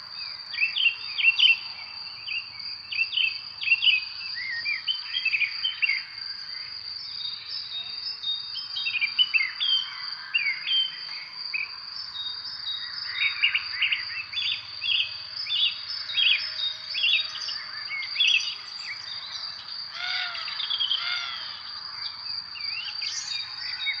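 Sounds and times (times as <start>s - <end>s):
high-pitched insect drone: 12.0s - 24.0s
birds chirping: 13.2s - 24.0s.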